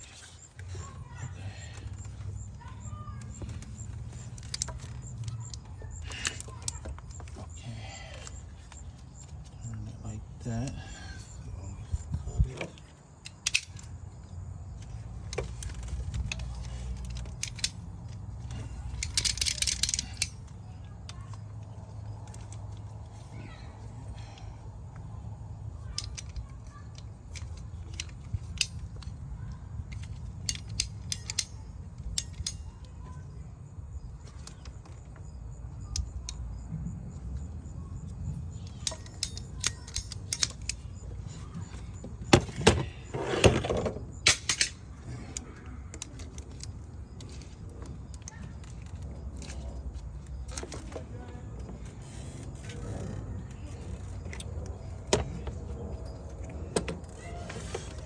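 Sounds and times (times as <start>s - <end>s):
hand tools clicking and clinking: 0.0s - 11.4s, 12.6s - 25.2s, 25.8s - 33.3s, 37.1s - 58.0s
rattling and rustling: 37.0s - 58.0s.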